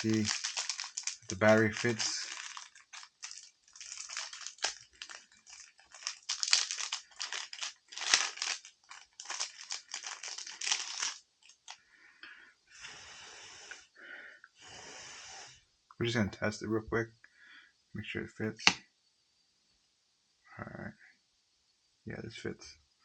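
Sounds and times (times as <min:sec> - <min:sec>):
crinkling handling noises: 0:00.0 - 0:11.8.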